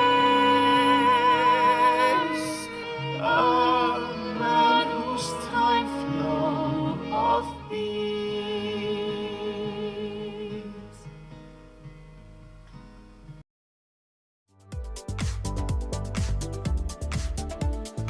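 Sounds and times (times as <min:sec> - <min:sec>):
woman singing slow song: 0:00.0 - 0:11.1.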